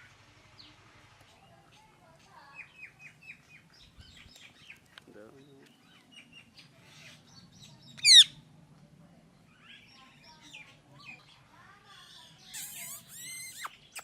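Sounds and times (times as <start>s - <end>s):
parrot chirps and squawks: 8.0s - 8.4s, 12.4s - 14.0s
parrot shrill call: 8.0s - 8.4s, 12.5s - 14.0s.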